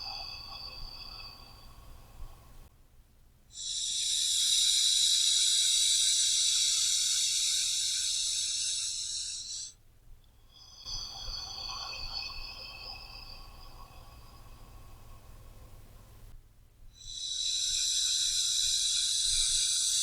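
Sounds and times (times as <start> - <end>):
slow deep breathing: 17.0 - 20.0.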